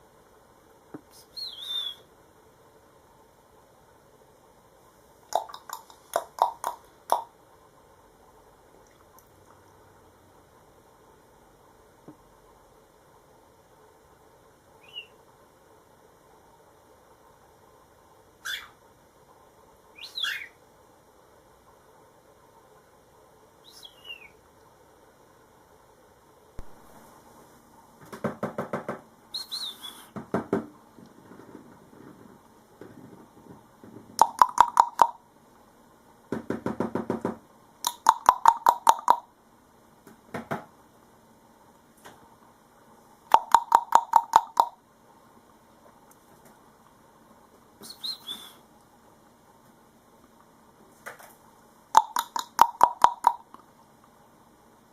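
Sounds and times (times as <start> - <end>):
cockatiel chirping: 1.4 - 2.0, 14.8 - 15.2, 18.4 - 18.8, 20.0 - 20.6, 23.6 - 24.4, 29.3 - 30.1, 47.8 - 48.6
bird beak tapping hard surface: 5.3 - 7.3, 34.2 - 35.2, 36.4 - 39.2, 43.3 - 44.8, 52.0 - 53.4.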